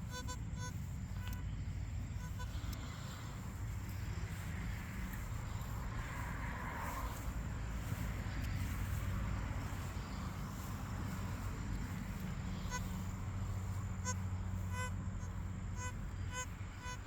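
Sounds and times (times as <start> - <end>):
metal detector beeps: 0.0 - 3.0, 12.6 - 13.1, 13.7 - 17.0.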